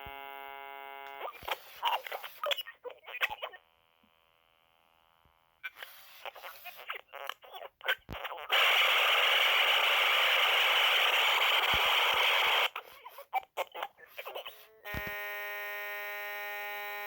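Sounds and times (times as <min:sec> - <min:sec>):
choppy glitching speaker sound: 0:05.7 - 0:12.8
static hiss: 0:08.5 - 0:12.8.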